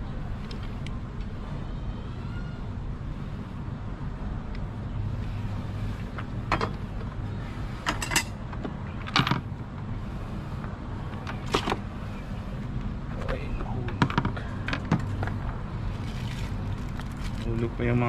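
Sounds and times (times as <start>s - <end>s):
steady low hum: 0.0s - 18.0s
hard parts clicking and knocking: 13.2s - 15.4s.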